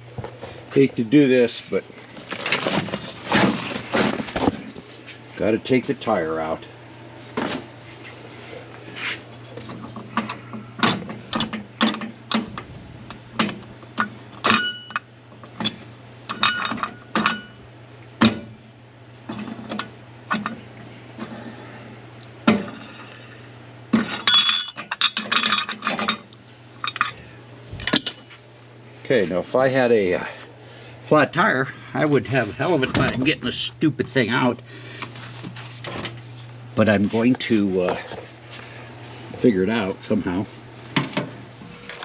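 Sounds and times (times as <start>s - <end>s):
metal hardware rattling: 41.4s - 42.0s
metallic clinks and knocks: 41.5s - 42.0s.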